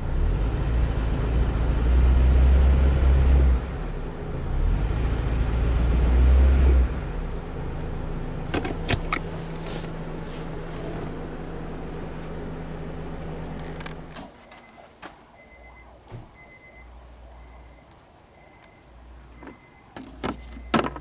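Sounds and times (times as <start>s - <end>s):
car engine revving: 0.0s - 14.1s
car engine idling: 0.0s - 14.2s.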